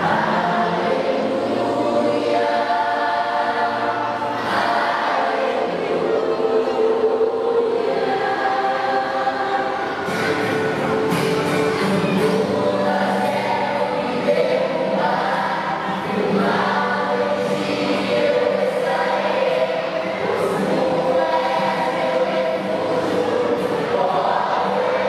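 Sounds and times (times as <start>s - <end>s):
choir singing: 0.0s - 25.0s.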